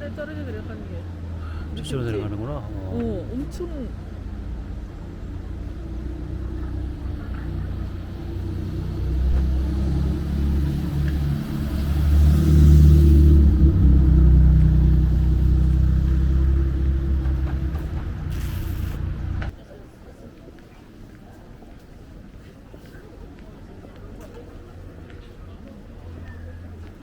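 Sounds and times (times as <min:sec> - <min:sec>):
van engine rumbling: 0:00.0 - 0:19.6
road noise while driving: 0:00.0 - 0:27.0.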